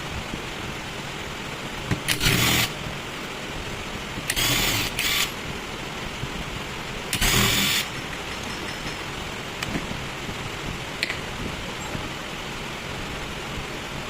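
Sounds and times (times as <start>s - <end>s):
small electric motor bursts: 2.1s - 2.8s, 4.3s - 5.4s, 7.1s - 7.9s.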